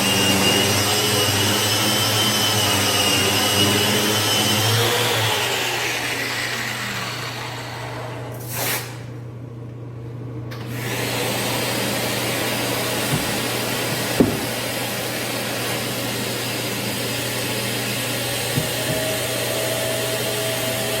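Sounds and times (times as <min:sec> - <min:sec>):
power sander whirring: 0:00.0 - 0:07.7, 0:17.8 - 0:21.0.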